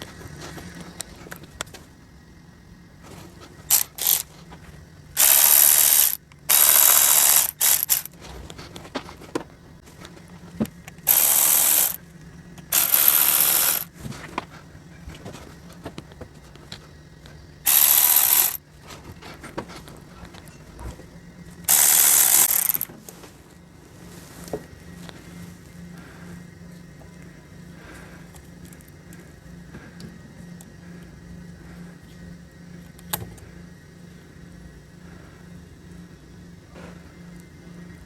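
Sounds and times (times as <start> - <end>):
ratchet wrench clicking: 3.7 - 4.3, 5.2 - 8.2, 11.1 - 12.0, 12.7 - 13.9, 17.7 - 18.6, 21.7 - 22.9.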